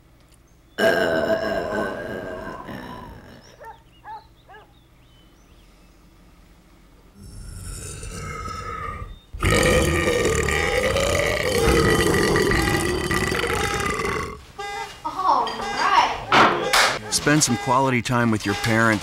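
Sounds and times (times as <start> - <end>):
person burping loudly: 0.8 - 3.5, 7.2 - 14.4.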